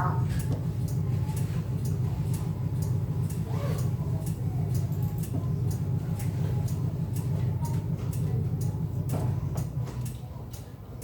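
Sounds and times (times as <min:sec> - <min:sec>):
turn-signal relay ticking: 0:04.2 - 0:10.7.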